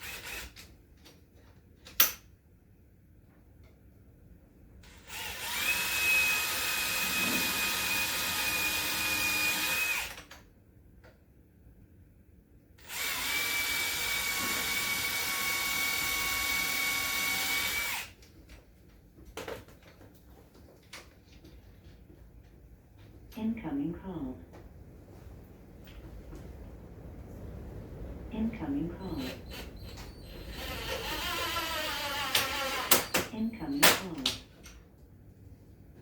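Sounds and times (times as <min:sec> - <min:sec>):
power drill whining: 0:00.0 - 0:00.6, 0:04.8 - 0:10.3, 0:12.8 - 0:18.2, 0:29.1 - 0:33.2.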